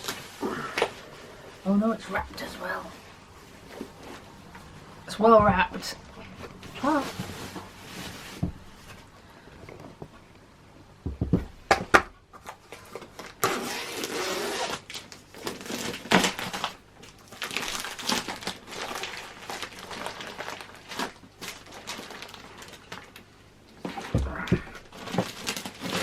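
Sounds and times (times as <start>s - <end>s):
packaging wrap crinkling: 0.0s - 1.4s, 12.4s - 26.0s.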